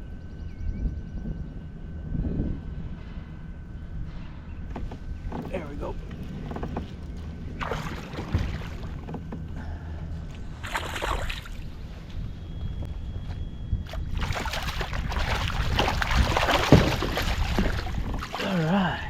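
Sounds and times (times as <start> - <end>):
wind rumble on microphone: 0.0 - 19.0
water splashing against kayak: 5.4 - 9.5, 13.9 - 18.7.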